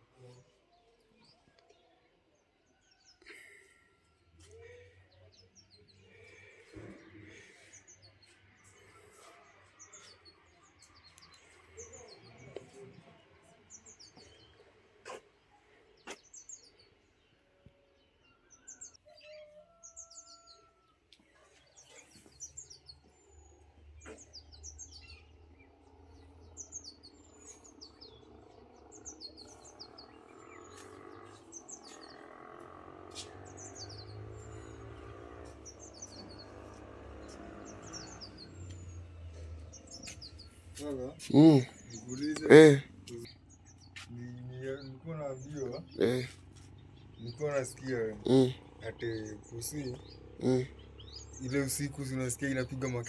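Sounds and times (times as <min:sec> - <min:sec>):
small birds chirping: 0:00.0 - 0:53.0.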